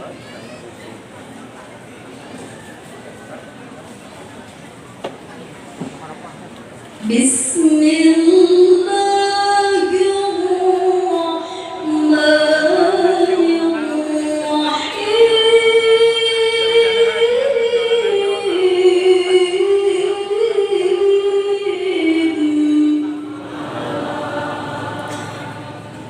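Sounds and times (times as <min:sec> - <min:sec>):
person chanting recitation: 0:07.0 - 0:26.0.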